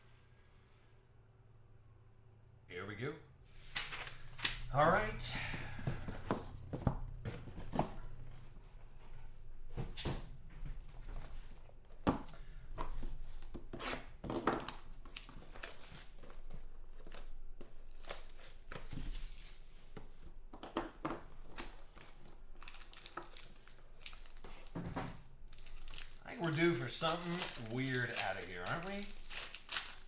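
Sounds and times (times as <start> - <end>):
handling rustles: 21.4 - 30.0
wrapping crinkling and tearing: 21.8 - 30.0.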